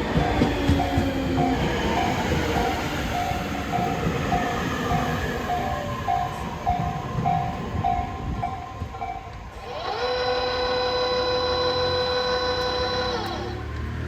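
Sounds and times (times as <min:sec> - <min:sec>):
level crossing alarm pulsing: 0:00.0 - 0:14.0
train rumble: 0:00.0 - 0:14.0
train horn long note: 0:09.6 - 0:14.0.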